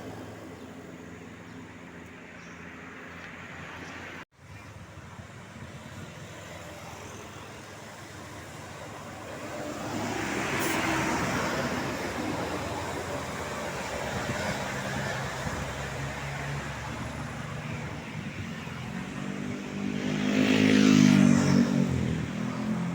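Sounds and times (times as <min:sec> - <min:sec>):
bus engine approaching: 0:00.0 - 0:22.9
vehicle passing: 0:06.0 - 0:22.9.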